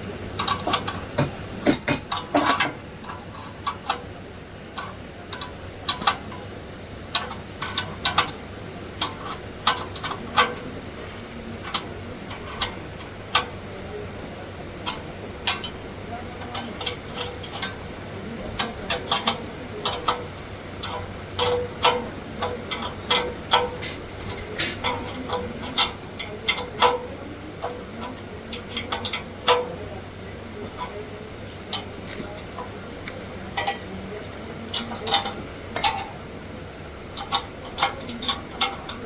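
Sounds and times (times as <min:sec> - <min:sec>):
metal parts clicking and knocking: 0:00.4 - 0:04.0, 0:30.7 - 0:36.2.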